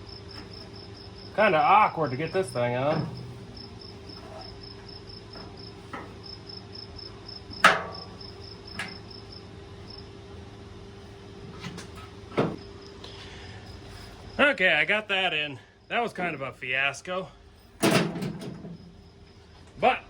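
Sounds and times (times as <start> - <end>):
low hum: 0.0 - 8.9
crickets chirping: 0.0 - 20.0
sharp metal knocks and clunks: 2.8 - 4.5, 7.6 - 8.1, 17.8 - 18.8.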